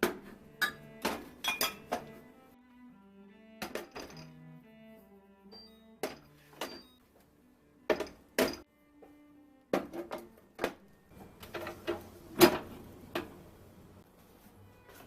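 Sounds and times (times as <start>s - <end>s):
kitchen dishes clacking: 0.0s - 2.1s.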